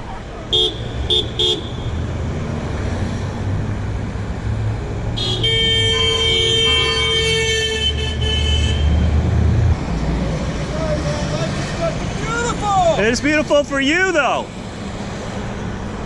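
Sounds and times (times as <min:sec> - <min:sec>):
road traffic rumble: 0:00.0 - 0:16.0
car horn tooting: 0:00.5 - 0:02.1, 0:05.2 - 0:09.0
long car horn blast: 0:00.5 - 0:02.1, 0:05.2 - 0:09.0.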